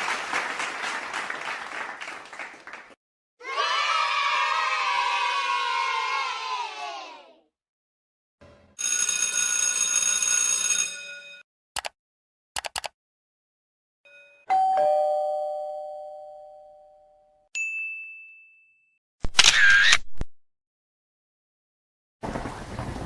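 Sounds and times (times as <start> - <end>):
short clicks: 11.8 - 12.0, 12.6 - 13.0
two-note doorbell chime: 14.1 - 19.0.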